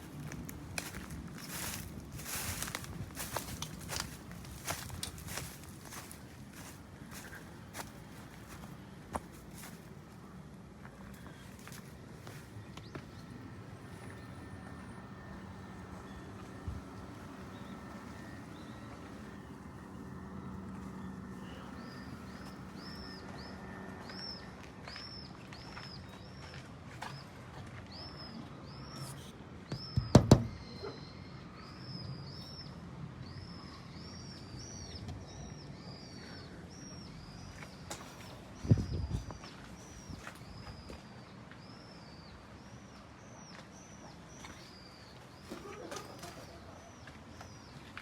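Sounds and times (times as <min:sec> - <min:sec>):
sharp knocks: 0:29.8 - 0:30.6.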